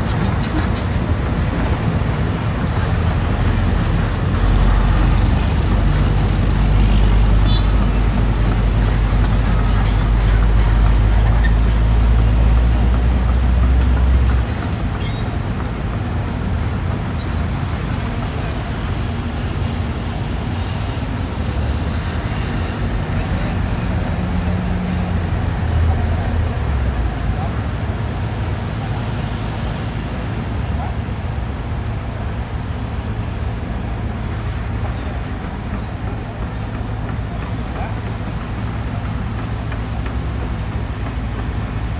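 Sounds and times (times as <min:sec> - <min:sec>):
high squeaks: 0:00.0 - 0:18.6, 0:34.2 - 0:36.2, 0:36.9 - 0:41.9
mechanical clatter: 0:00.0 - 0:18.6, 0:34.2 - 0:41.9
excavator diesel engine rumble: 0:00.0 - 0:41.9.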